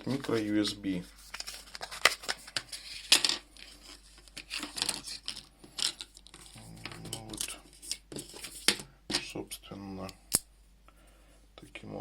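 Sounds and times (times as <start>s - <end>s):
small parts clicking and rattling: 2.9s - 8.0s.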